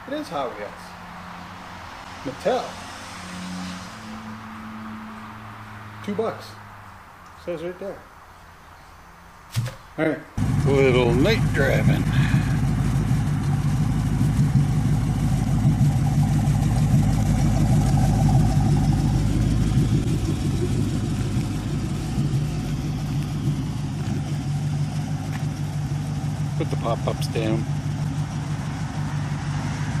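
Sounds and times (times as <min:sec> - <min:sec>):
car engine running while driven: 0:10.4 - 0:30.0.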